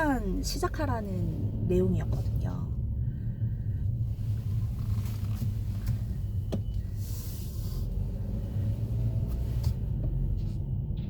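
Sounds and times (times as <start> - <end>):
car road noise rumble: 0.0 - 11.0.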